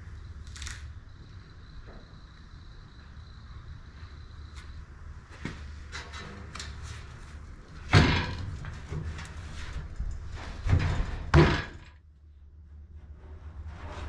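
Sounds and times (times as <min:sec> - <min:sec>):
knocks and clanks: 0:07.8 - 0:12.0.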